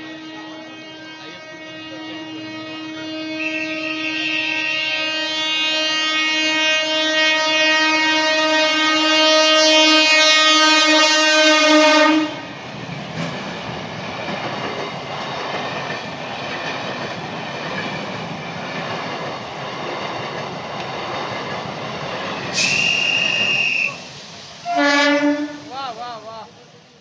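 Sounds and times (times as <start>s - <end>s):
train horn: 0.0s - 12.5s, 22.5s - 25.7s
train wheels rolling on rails: 9.1s - 27.0s.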